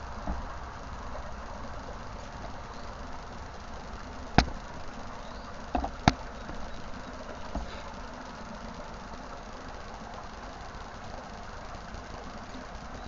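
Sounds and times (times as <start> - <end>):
sharp knocks: 4.4 - 4.6.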